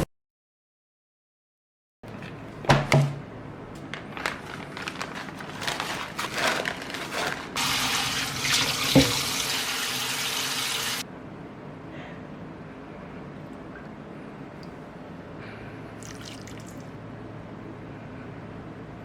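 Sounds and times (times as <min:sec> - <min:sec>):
tap running: 0:07.6 - 0:11.0
water splashing in a sink: 0:07.6 - 0:11.0, 0:16.0 - 0:17.0.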